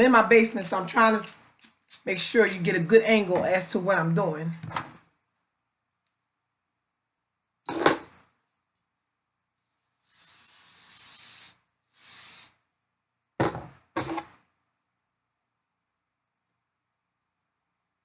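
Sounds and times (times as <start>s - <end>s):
hairspray aerosol spraying: 10.0s - 12.6s.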